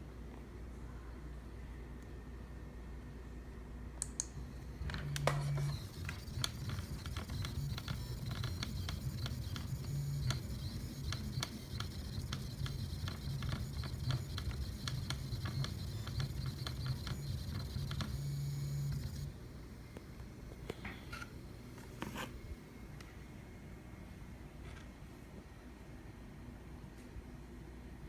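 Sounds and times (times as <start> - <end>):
laser engraver clicking: 4.0 - 20.2
low motor hum: 4.4 - 20.2.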